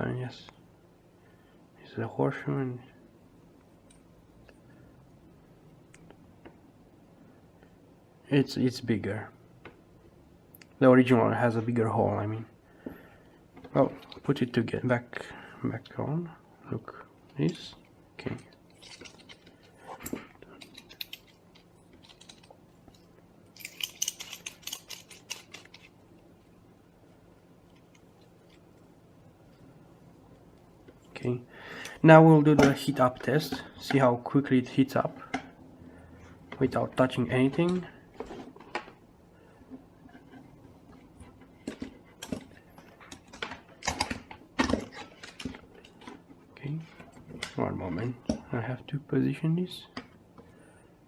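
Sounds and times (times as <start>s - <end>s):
small parts clicking and scraping: 18.4s - 26.0s.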